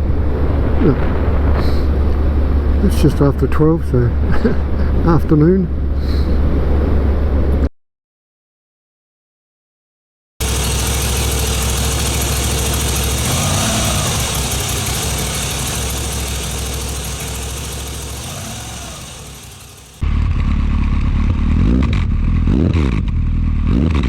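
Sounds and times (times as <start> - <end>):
motorcycle throttle blips: 10.4 - 22.4
motorcycle engine: 10.4 - 23.6.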